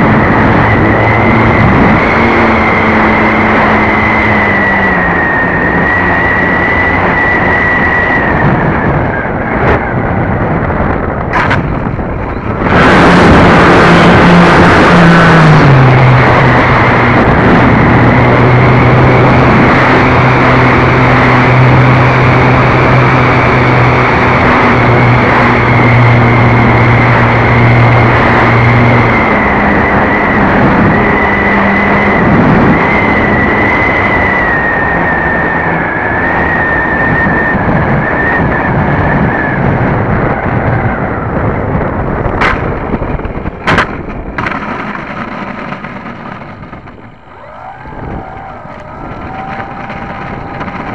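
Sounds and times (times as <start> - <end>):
electric motor and propeller whine: 0.0 - 50.9
wind rush on microphone: 0.0 - 50.9
lower hum: 38.8 - 50.9
sharp clicks: 43.6 - 47.2.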